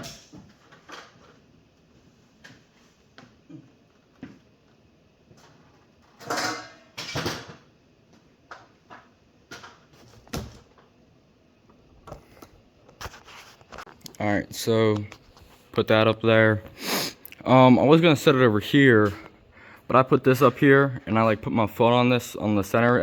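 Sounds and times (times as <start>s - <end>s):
objects clattering: 5.4s - 7.7s.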